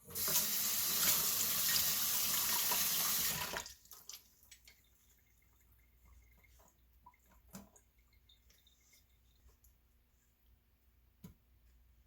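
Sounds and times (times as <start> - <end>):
tap water running into sink: 0.0 - 8.8
faint drips: 3.6 - 10.6.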